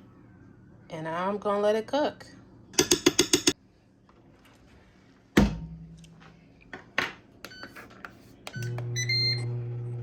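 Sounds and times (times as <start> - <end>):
air fryer fan hum: 8.5 - 10.0.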